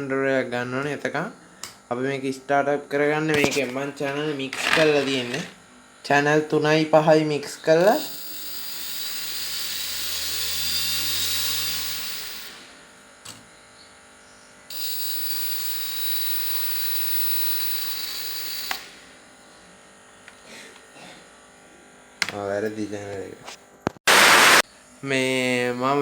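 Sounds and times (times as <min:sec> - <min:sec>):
electric motors whining: 0:03.4 - 0:23.0.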